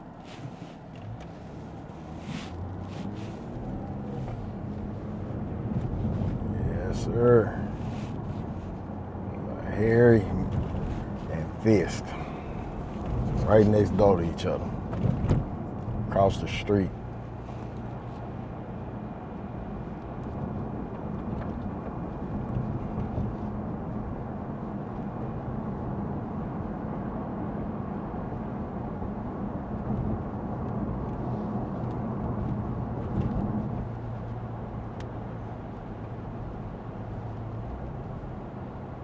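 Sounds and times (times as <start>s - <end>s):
tyre noise on wet road: 0.0s - 9.0s
low engine hum: 0.0s - 39.0s.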